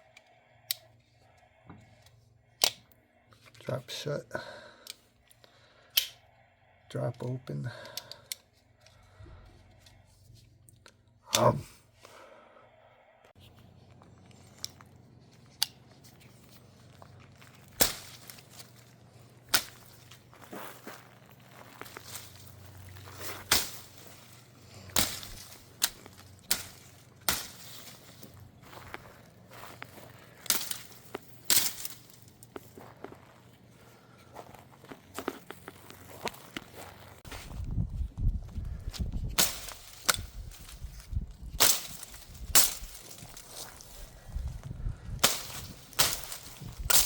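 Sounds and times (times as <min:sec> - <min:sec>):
folding knife snapping: 0:02.6 - 0:02.8, 0:06.0 - 0:06.2
low rumble of handling: 0:13.2 - 0:47.0.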